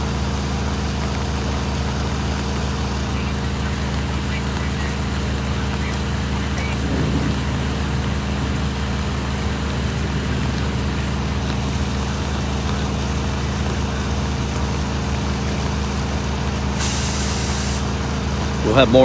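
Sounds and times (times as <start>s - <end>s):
diesel engine idling: 0.0s - 19.0s
air hiss: 16.8s - 18.0s.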